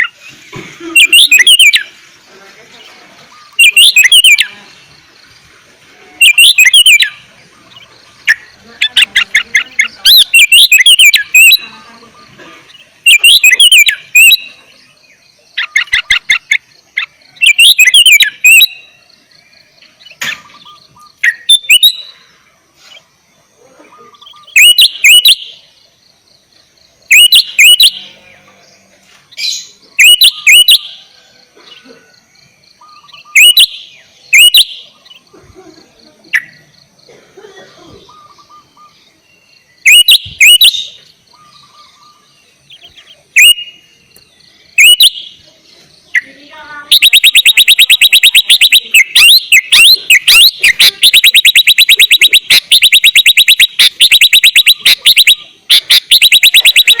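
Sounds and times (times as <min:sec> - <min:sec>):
bird singing whistled phrases: 0:00.8 - 0:01.9, 0:02.8 - 0:04.8, 0:06.2 - 0:14.7, 0:15.6 - 0:19.0, 0:20.0 - 0:22.2, 0:24.0 - 0:25.6, 0:27.1 - 0:28.3, 0:29.3 - 0:31.1, 0:32.7 - 0:35.2, 0:38.0 - 0:43.9, 0:44.8 - 0:45.5, 0:46.1 - 0:57.0.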